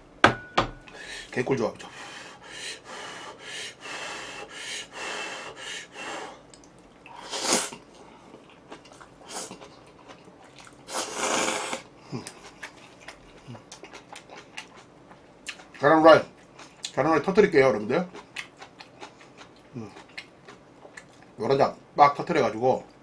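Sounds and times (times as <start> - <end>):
soft eating sounds: 0.9 - 23.0
person slurping noodles: 7.1 - 7.8, 9.2 - 9.6, 10.9 - 11.9.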